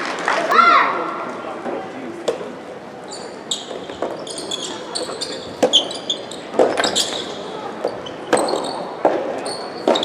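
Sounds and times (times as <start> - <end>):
sneakers squeaking on court floor: 3.0 - 10.0.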